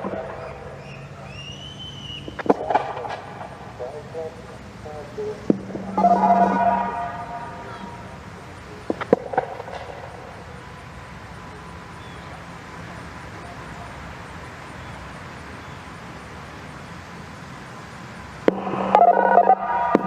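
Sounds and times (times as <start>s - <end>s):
outdoor background noise: 0.0s - 20.0s.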